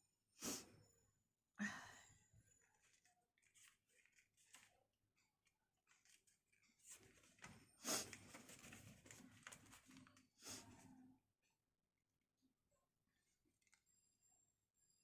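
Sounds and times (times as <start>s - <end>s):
person breathing and sniffing: 0.4s - 0.7s, 7.8s - 8.8s, 10.4s - 11.0s
faint rustles and clicks: 2.5s - 10.3s.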